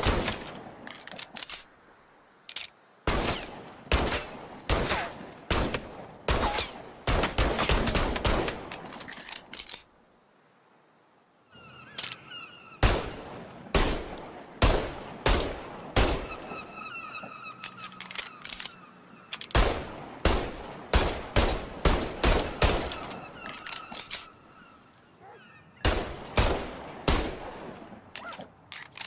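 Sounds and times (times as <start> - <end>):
revolver gunshots with echo: 12.8 - 16.4, 19.5 - 23.1, 25.8 - 27.8.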